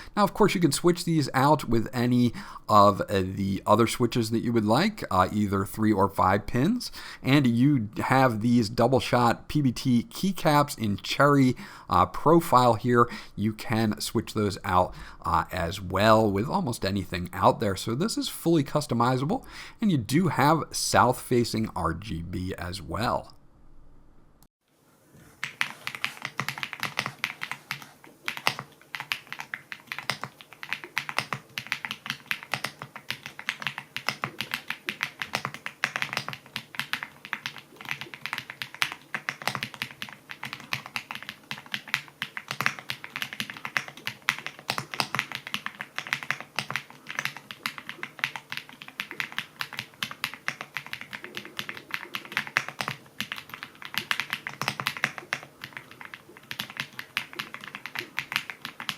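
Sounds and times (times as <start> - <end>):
mechanical keyboard typing: 25.4 - 58.9.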